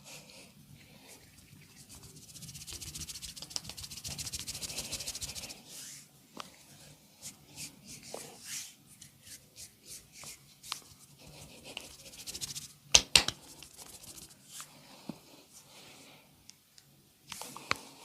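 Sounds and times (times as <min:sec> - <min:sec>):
hands rubbing skin: 0:01.1 - 0:05.9, 0:07.2 - 0:14.7
sharp snaps: 0:02.6 - 0:04.0.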